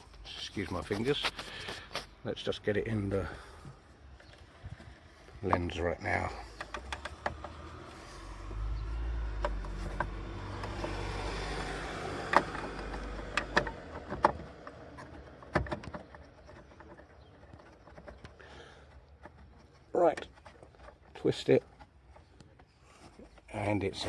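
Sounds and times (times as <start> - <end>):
plastic clicks and knocks: 6.5 - 7.7, 9.4 - 18.4.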